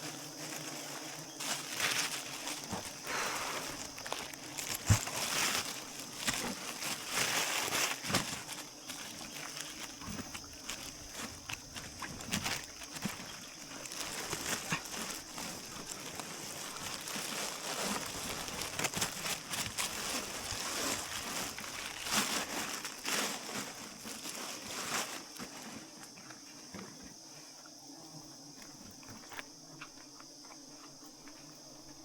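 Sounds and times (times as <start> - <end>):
high-pitched hiss: 0.0 - 10.8
rustling and crinkling: 0.0 - 27.6.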